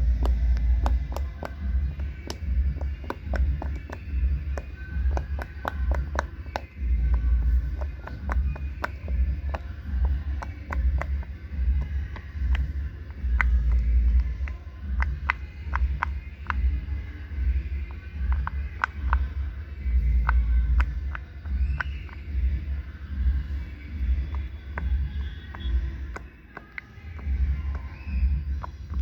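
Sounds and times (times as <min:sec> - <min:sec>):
plastic toys clicking: 0:00.0 - 0:16.8, 0:17.7 - 0:19.4.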